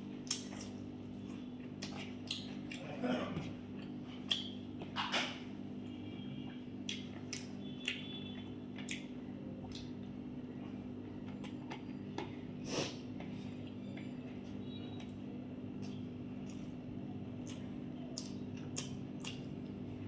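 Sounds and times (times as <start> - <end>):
wet chewing and lip smacks: 0.2 - 0.9, 1.7 - 2.8, 3.8 - 5.2, 6.8 - 10.1, 15.8 - 16.8, 17.4 - 19.8.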